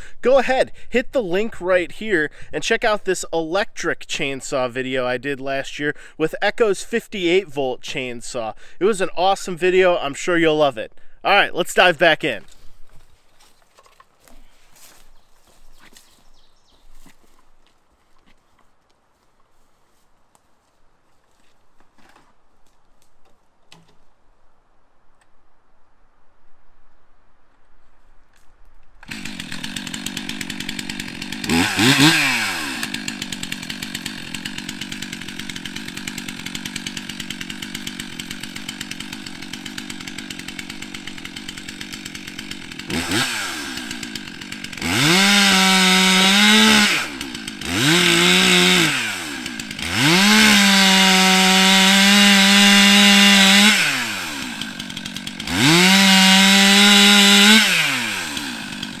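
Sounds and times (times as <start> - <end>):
chainsaw cutting through log: 11.3 - 13.0, 29.0 - 59.0
chainsaw idling and revving: 29.0 - 59.0.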